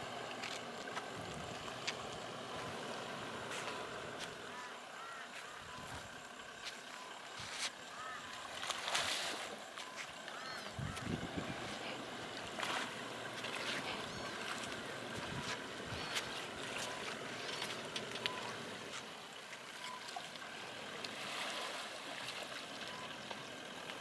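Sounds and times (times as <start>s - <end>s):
vehicle splashing through water: 0.0s - 24.0s
faint bird chirps: 2.5s - 8.6s, 9.8s - 12.1s.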